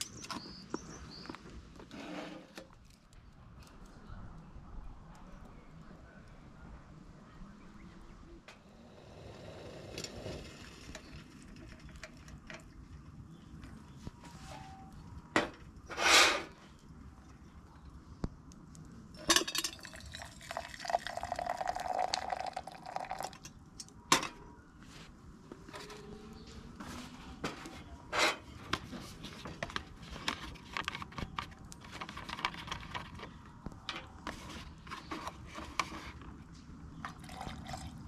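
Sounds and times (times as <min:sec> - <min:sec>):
liquid being poured: 0:19.7 - 0:23.5, 0:37.0 - 0:38.0.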